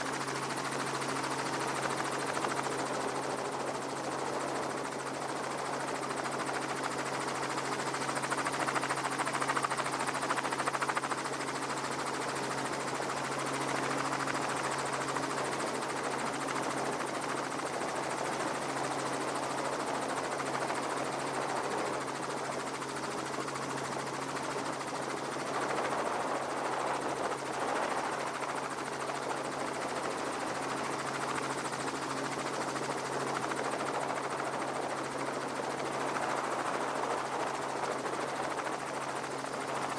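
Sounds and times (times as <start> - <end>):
helicopter engine and rotor: 0.0 - 39.9.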